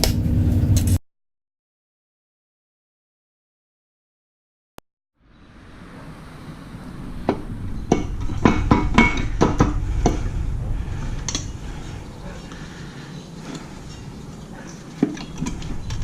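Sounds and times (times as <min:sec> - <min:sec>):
steady low rumble: 0:05.2 - 0:16.0.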